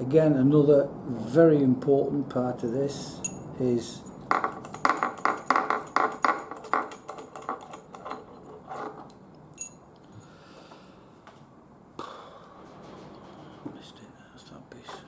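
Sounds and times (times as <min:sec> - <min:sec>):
small metal parts clinking: 0:03.2 - 0:09.9.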